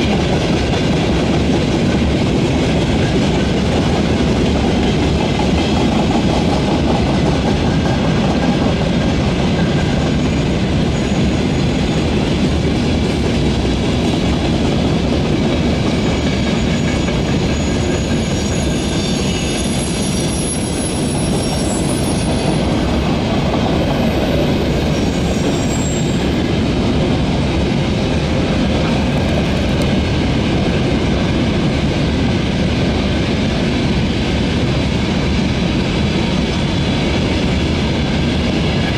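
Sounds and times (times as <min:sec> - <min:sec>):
freight train rumbling past: 0:00.0 - 0:38.9
high-pitched wheel squeal: 0:16.7 - 0:22.8, 0:24.0 - 0:26.4.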